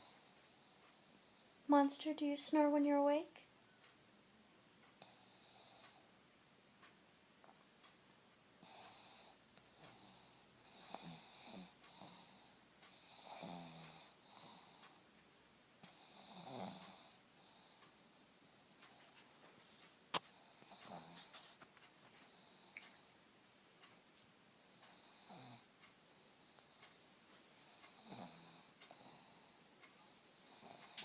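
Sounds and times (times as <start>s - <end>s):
dog wheezy snoring: 5.0s - 6.1s, 8.6s - 15.0s, 15.8s - 17.8s, 20.3s - 21.5s, 24.6s - 31.0s.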